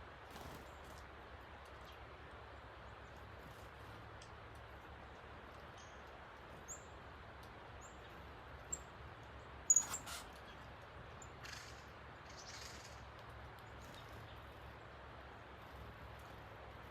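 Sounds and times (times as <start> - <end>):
small birds chirping: 0.3 - 16.9.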